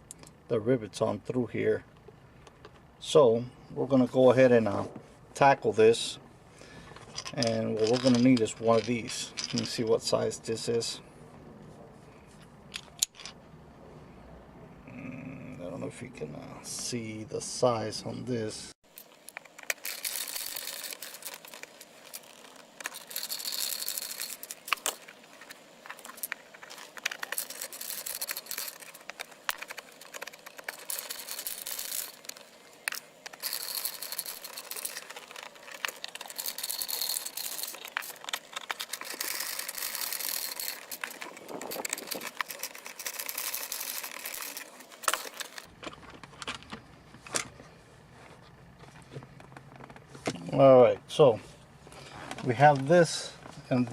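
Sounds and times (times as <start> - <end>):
hand tool clicks and rattles: 7.0 - 9.8, 18.9 - 46.8
scratchy rustling: 18.9 - 45.7.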